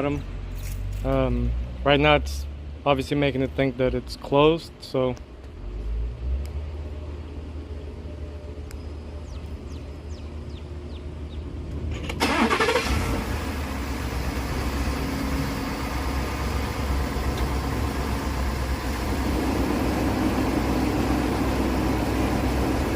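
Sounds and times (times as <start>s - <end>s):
low steady rumble: 0.0s - 22.9s
pickup engine starting and running: 5.4s - 22.9s.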